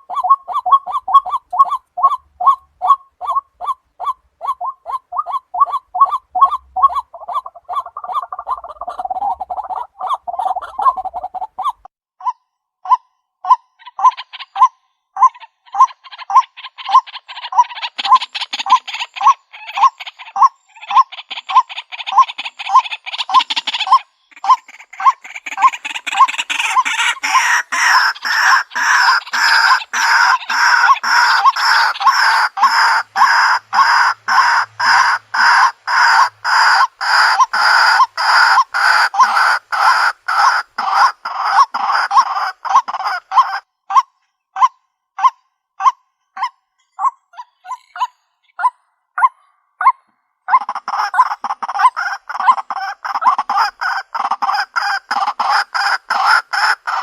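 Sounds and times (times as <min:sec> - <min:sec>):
bird calling harsh notes: 0:00.0 - 0:44.0.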